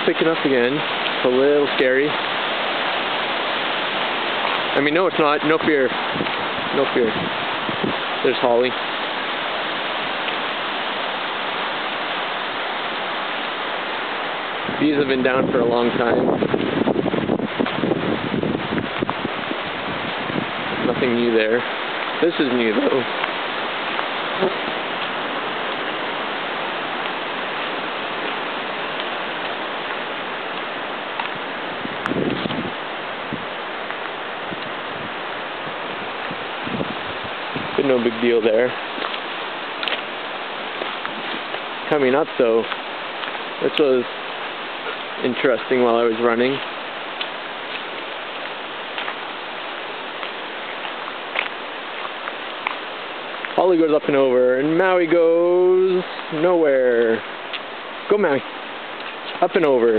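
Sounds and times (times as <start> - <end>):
steady rushing noise: 0.0 - 59.9
wind rushing: 5.4 - 8.4, 14.6 - 26.7, 31.7 - 33.5, 34.4 - 37.9.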